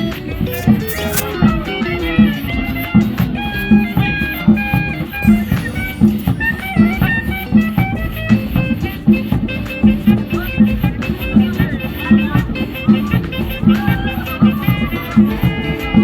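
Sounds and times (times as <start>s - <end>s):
sliding held melody notes: 3.8s - 16.0s.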